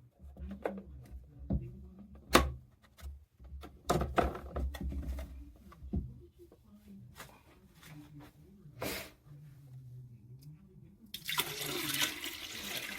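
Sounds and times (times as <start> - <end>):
knocks of things being handled: 0.4 - 6.2.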